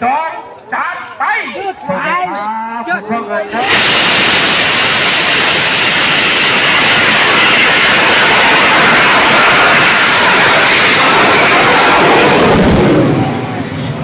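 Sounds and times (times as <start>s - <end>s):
rocket motor rushing: 3.5s - 13.3s.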